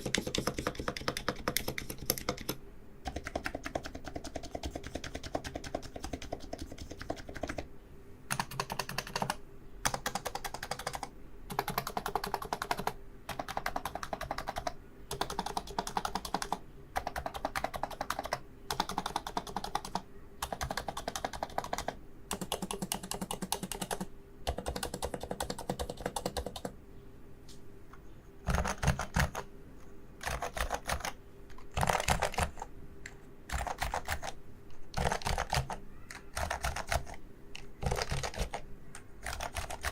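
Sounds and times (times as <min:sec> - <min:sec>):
keyboard keystrokes: 0:00.0 - 0:07.6, 0:28.4 - 0:29.4, 0:30.2 - 0:39.9.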